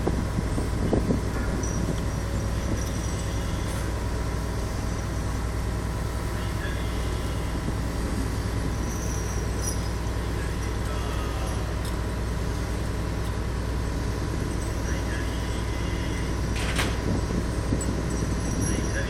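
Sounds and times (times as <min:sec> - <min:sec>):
diesel machinery drone: 0:00.0 - 0:19.0
faint high clinks: 0:08.9 - 0:10.0.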